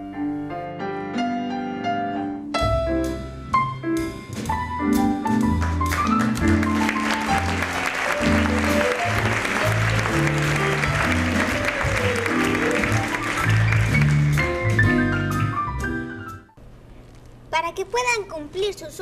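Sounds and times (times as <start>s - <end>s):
piano playing: 0.0s - 16.6s
audience applauding: 5.5s - 15.8s.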